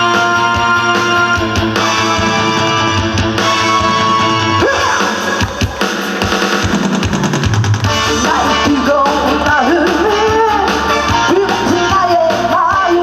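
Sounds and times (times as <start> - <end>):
dance backing track with beat: 3.2 - 10.9.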